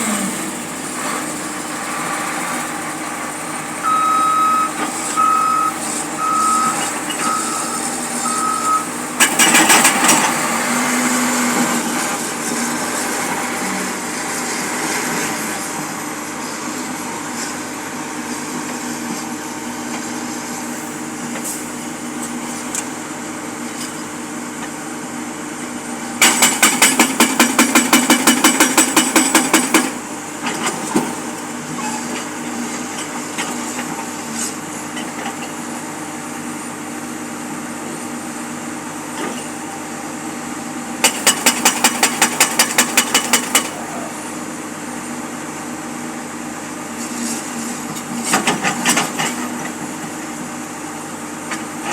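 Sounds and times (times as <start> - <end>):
jackhammer blows: 0.0 - 15.7, 26.2 - 31.3, 41.0 - 44.2
engine running: 0.0 - 35.6.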